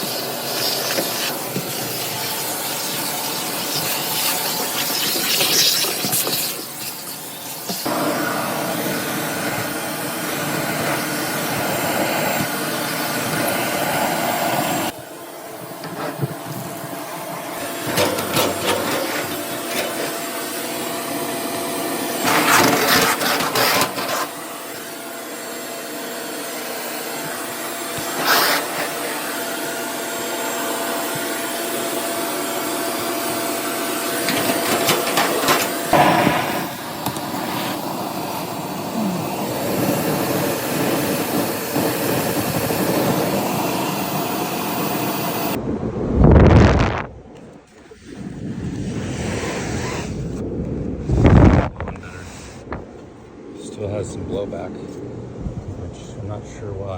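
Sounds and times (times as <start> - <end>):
vacuum running: 0.0 - 45.7
scraping and rattling in duct: 15.8 - 20.9, 22.1 - 24.9, 34.2 - 38.0.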